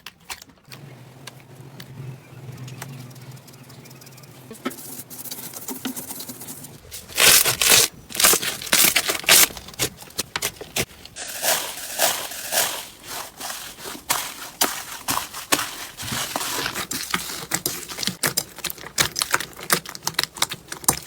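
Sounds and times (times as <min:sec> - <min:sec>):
slime squeezed by hand crackling: 0:07.1 - 0:10.0.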